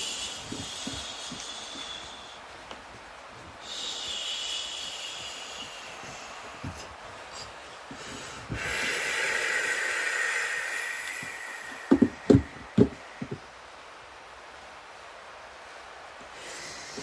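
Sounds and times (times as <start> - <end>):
soft massage hiss: 0.0 - 17.0
sharp massage knocks: 11.1 - 13.4.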